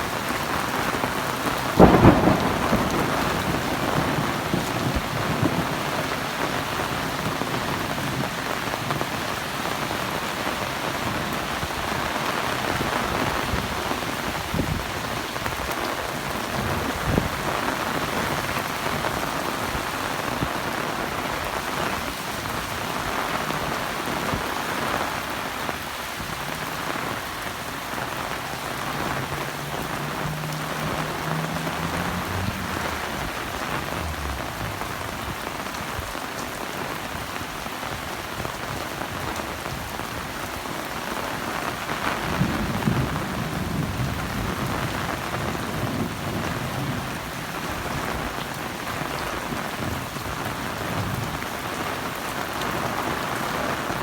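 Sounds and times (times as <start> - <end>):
heavy rain: 0.0 - 54.0
thunder clap rumbling: 0.6 - 8.9, 28.4 - 36.2.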